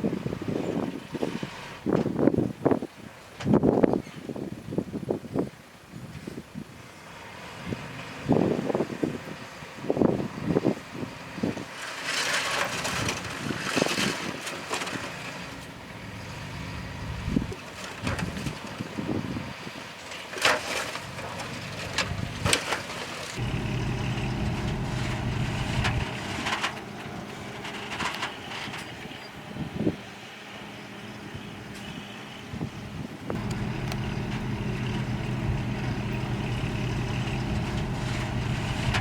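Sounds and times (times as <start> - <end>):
diesel engine droning: 14.6 - 19.8, 20.9 - 39.0
metallic clanks and knocks: 23.4 - 29.0.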